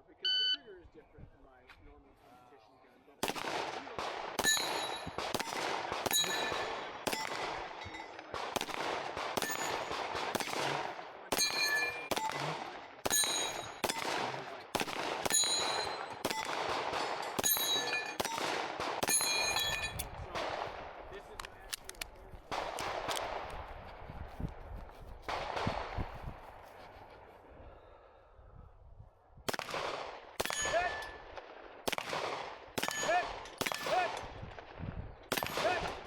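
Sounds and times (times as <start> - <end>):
pistol shots with echo: 3.2 - 23.7, 25.3 - 26.2, 29.5 - 36.0
steel target ringing: 4.4 - 5.2, 6.1 - 6.7, 11.4 - 12.1, 13.1 - 14.0, 15.3 - 16.2, 17.2 - 18.4, 19.0 - 20.0.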